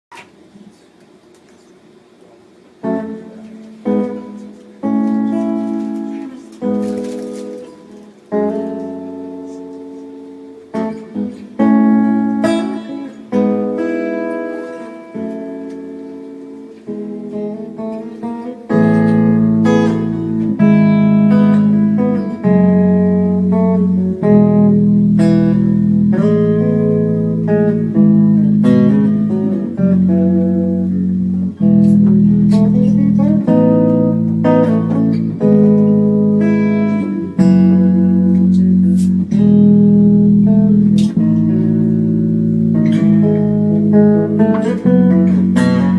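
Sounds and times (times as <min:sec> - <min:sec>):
guitar picking chords: 0:01.0 - 0:45.9
low bass notes: 0:18.8 - 0:45.9.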